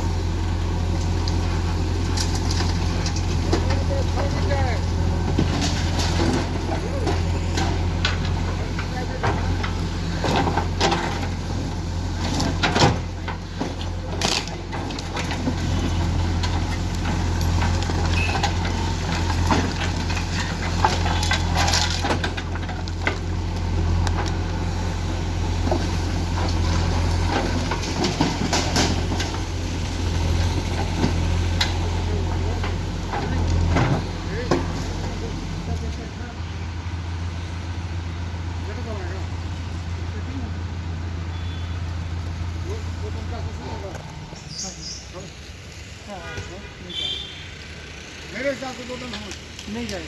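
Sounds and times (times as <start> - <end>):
diesel engine running: 0.0 - 50.0
debris crunching and knocking: 1.6 - 36.0.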